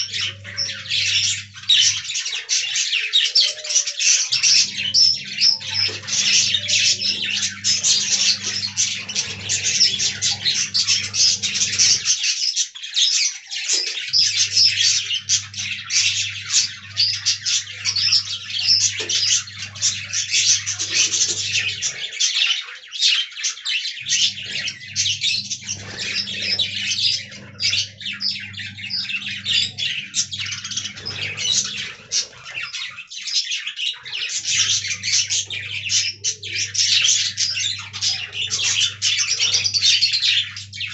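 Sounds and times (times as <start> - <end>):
budgerigars chirping and chattering: 0.0 - 40.9
low steady hum: 4.2 - 12.1, 14.2 - 22.0, 24.0 - 33.0, 34.0 - 40.9.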